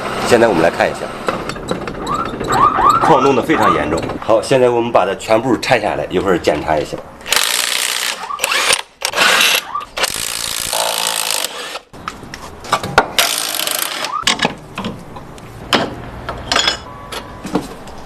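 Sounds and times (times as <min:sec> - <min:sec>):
ratchet wrench bursts: 0:07.3 - 0:11.8.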